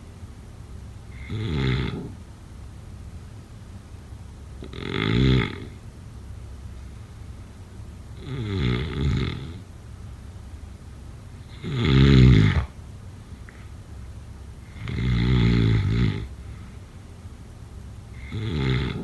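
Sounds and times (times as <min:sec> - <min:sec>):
person snoring: 0:01.1 - 0:02.2, 0:04.6 - 0:05.8, 0:08.2 - 0:09.6, 0:11.5 - 0:12.8, 0:14.6 - 0:16.3, 0:18.2 - 0:19.0.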